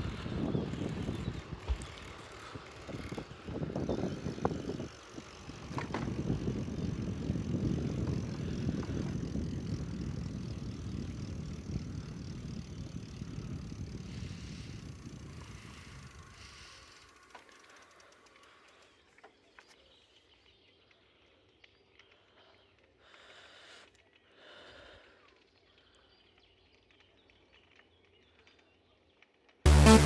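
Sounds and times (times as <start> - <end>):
electronic dance music: 29.7 - 30.0.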